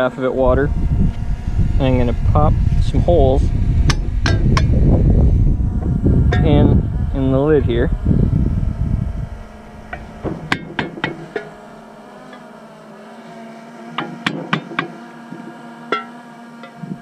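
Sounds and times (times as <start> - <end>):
hammer tapping metal lid: 15.9 - 16.8.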